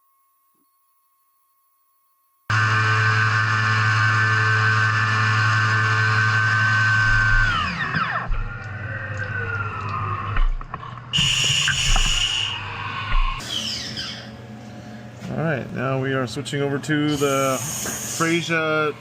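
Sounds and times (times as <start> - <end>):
mill spindle whining: 2.5 - 14.4.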